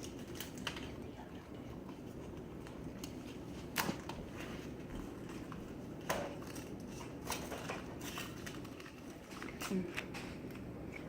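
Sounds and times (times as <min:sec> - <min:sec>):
plastic packaging clicks and crinkles: 0:00.0 - 0:01.0, 0:05.0 - 0:11.0.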